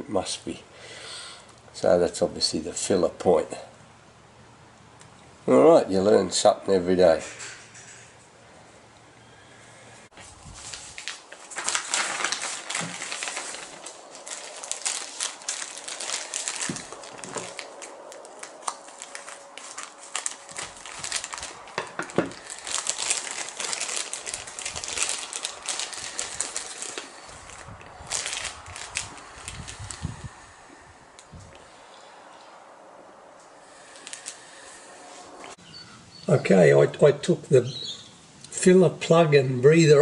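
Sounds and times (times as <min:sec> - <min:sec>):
rustling and crinkling: 0:10.1 - 0:30.3, 0:33.4 - 0:35.6.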